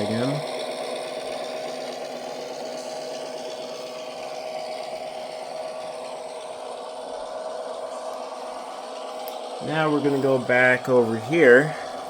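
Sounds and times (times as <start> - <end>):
constant steady tone: 0.0 - 12.0
diesel engine sound from speaker: 0.0 - 12.0.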